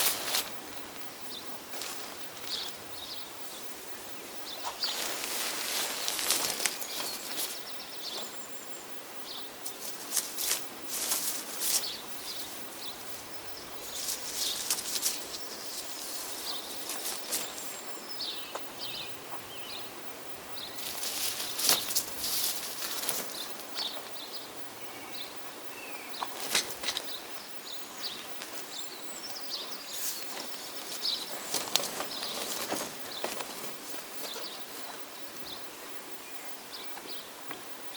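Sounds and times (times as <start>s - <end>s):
steady hiss: 0.0s - 37.9s
clicks taps and scraping rustles: 30.0s - 34.5s.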